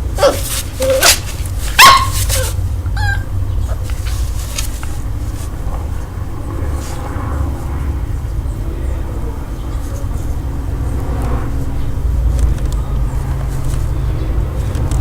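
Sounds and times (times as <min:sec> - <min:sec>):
puppy yelping bark: 0:00.1 - 0:04.7
wavering squeak: 0:00.2 - 0:03.8.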